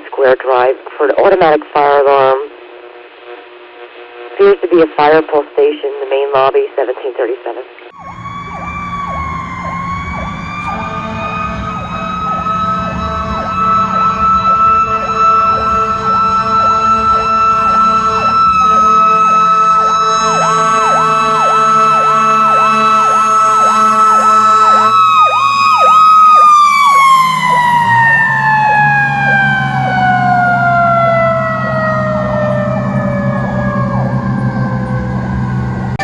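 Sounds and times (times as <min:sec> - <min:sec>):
electronic siren yelping: 0:07.9 - 0:36.0
mechanical siren winding down: 0:07.9 - 0:36.0
engine running: 0:08.0 - 0:36.0.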